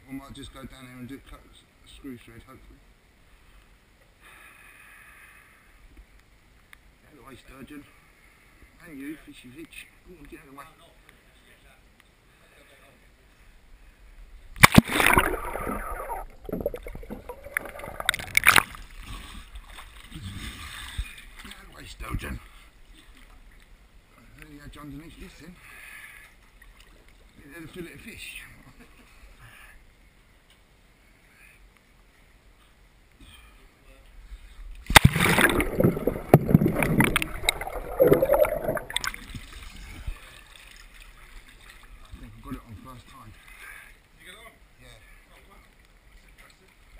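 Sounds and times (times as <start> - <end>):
water gurgles and clicks: 14.5 - 21.6, 34.7 - 42.2
pond water splashing: 14.6 - 20.2, 34.8 - 42.1
underwater knocks and scrapes: 16.3 - 19.6, 35.0 - 40.2.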